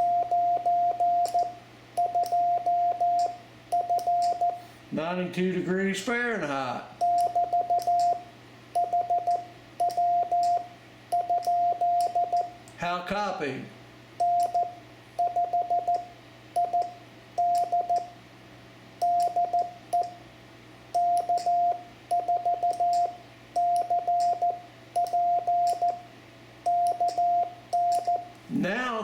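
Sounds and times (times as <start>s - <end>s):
morse code tone: 0.0s - 4.8s, 7.0s - 8.2s, 8.8s - 12.6s, 14.2s - 18.1s, 19.0s - 20.1s, 21.0s - 26.0s, 26.7s - 28.3s.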